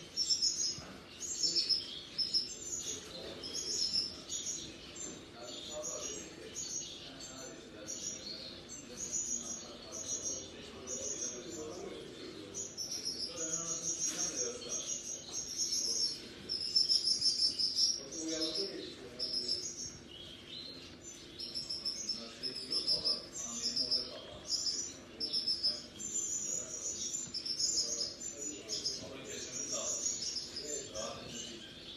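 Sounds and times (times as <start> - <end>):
small birds chirping in trills: 0.0 - 31.9
lower-pitched bird calls: 12.6 - 31.9.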